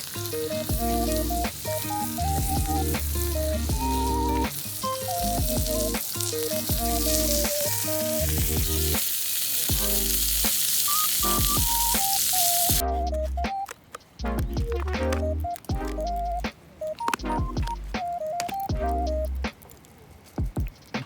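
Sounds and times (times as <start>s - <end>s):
background music with beat: 0.0s - 9.1s, 9.7s - 19.7s, 20.4s - 21.0s
food sizzling in a pan: 0.0s - 12.8s.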